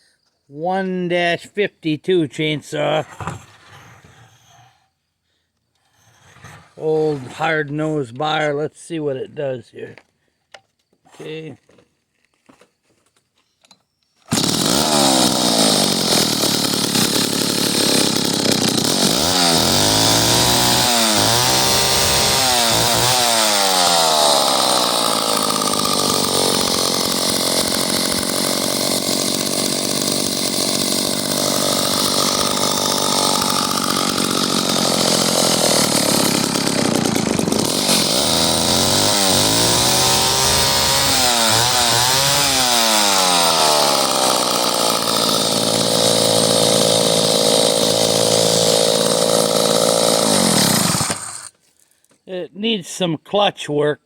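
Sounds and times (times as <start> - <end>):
chainsaw revving: 14.3 - 51.6.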